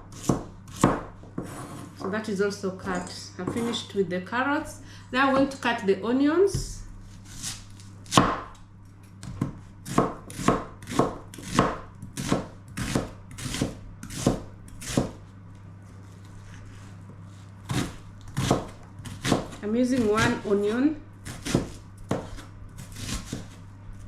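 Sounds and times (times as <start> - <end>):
knife chopping onion: 0.0 - 2.1, 6.5 - 8.6, 9.2 - 15.2, 17.7 - 23.7.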